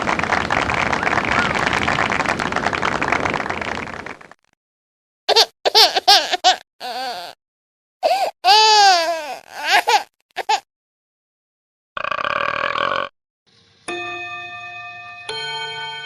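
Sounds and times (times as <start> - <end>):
noisy sound: 0.0 - 4.5.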